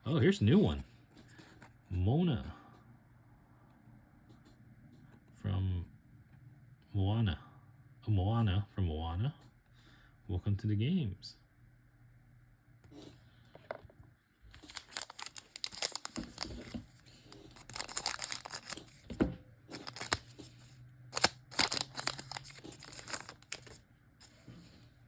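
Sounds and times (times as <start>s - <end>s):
wrapper being torn and crinkled: 14.5s - 19.0s, 19.7s - 23.8s.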